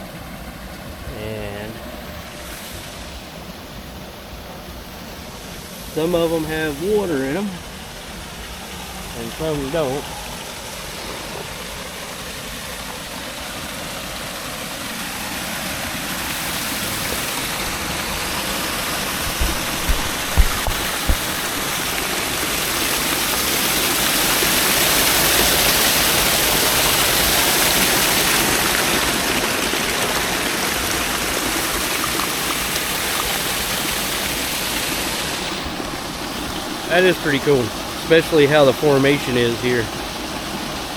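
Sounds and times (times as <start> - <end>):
waterfall rushing: 0.0 - 40.9
dull bumps: 19.0 - 21.8.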